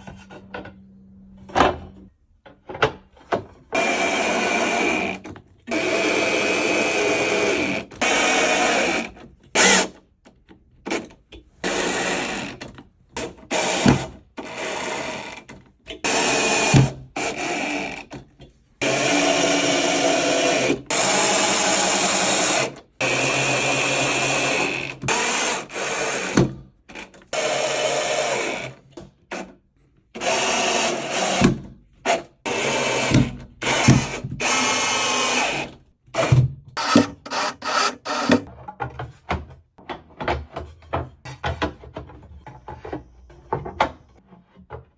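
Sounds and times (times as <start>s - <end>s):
power drill running: 3.8s - 9.9s, 16.0s - 18.0s, 18.8s - 26.5s, 27.4s - 28.8s, 30.2s - 31.5s, 32.5s - 38.5s.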